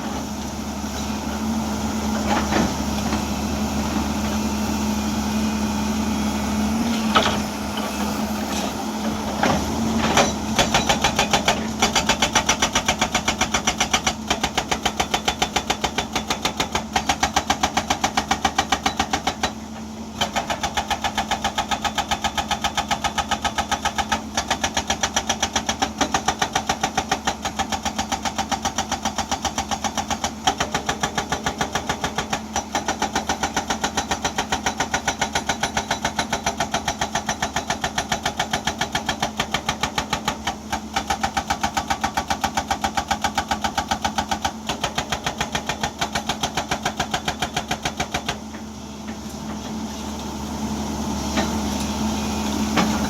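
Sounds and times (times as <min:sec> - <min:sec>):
hydraulic breaker pounding rock: 0:00.0 - 0:05.0, 0:06.0 - 0:53.0
diesel engine running: 0:00.0 - 0:18.2, 0:46.6 - 0:53.0.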